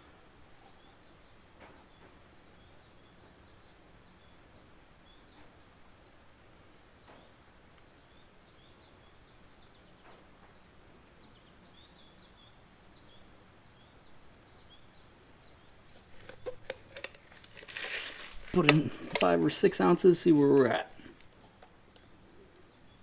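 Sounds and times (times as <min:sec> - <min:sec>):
faint bird chirps: 0:00.0 - 0:16.1
background hiss: 0:00.0 - 0:23.0
sharp clicks and knocks: 0:16.0 - 0:21.2.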